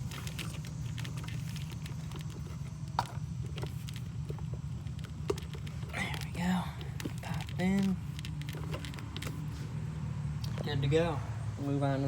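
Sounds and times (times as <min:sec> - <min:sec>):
small clicks and knocks: 0:00.0 - 0:09.4
steady low hum: 0:00.0 - 0:12.0.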